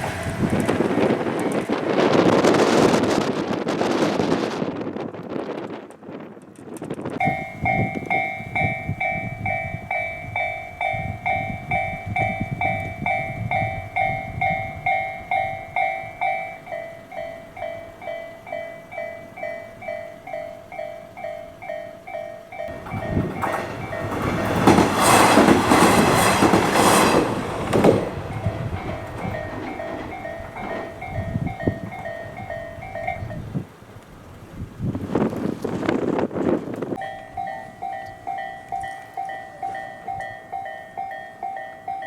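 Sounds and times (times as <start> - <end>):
diesel train passing: 0.0 - 6.3, 7.1 - 42.0
level-crossing alarm ding: 7.2 - 24.5, 37.0 - 42.0.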